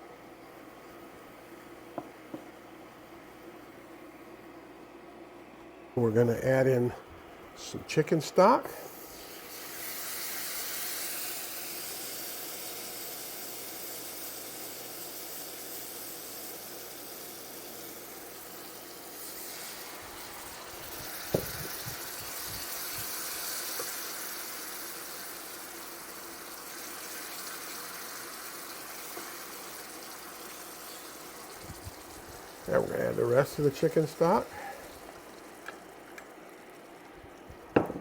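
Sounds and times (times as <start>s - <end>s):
liquid sizzling in a pan: 8.7s - 38.0s.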